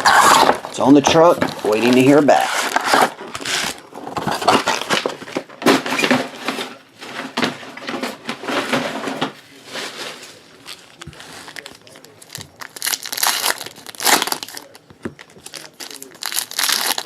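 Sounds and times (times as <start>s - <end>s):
card packaging tearing and crinkling: 0.0s - 6.5s, 10.1s - 17.0s.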